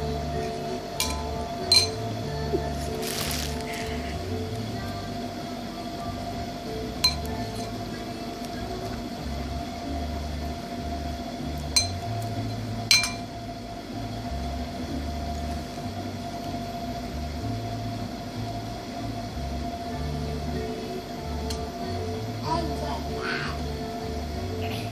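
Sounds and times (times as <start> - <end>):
steady low hum: 0.0 - 24.9
glass dish clinking: 1.0 - 2.0, 11.8 - 12.0, 12.9 - 13.3.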